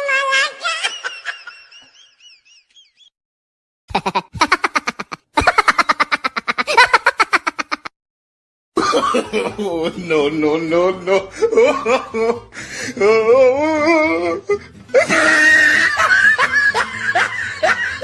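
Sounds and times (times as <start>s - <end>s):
staccato cackling laughter: 3.9s - 7.9s, 15.0s - 18.0s.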